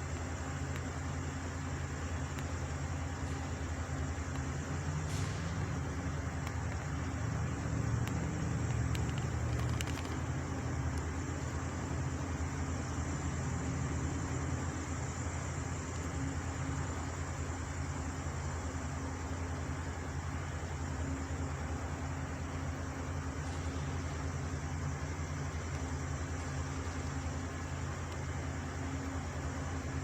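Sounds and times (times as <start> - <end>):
low engine hum: 0.0 - 30.0
faint clicks: 0.1 - 1.2, 2.0 - 11.6.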